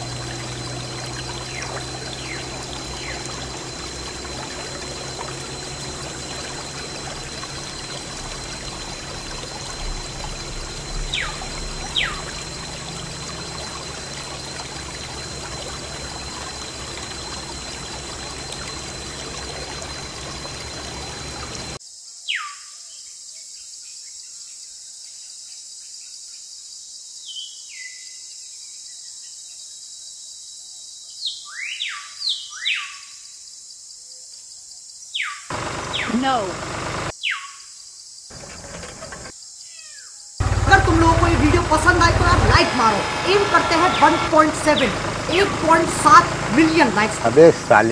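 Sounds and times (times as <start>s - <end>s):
water pouring from pump: 0.0s - 21.8s, 35.5s - 37.1s, 38.3s - 39.3s, 40.4s - 47.9s
whistles falling in pitch: 0.0s - 21.8s.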